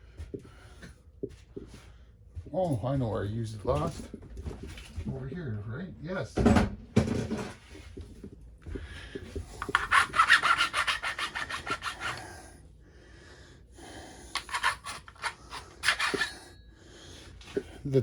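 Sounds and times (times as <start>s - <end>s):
file scraping metal: 9.5s - 12.5s, 14.3s - 16.7s.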